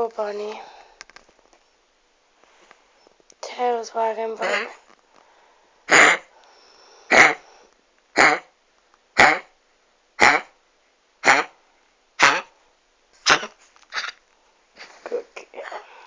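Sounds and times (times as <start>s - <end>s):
dog coughing harshly: 4.4s - 4.8s, 5.9s - 6.3s, 7.1s - 7.4s, 8.1s - 8.5s, 9.2s - 9.5s, 10.2s - 10.5s, 11.2s - 11.5s, 12.2s - 12.5s, 13.2s - 14.2s.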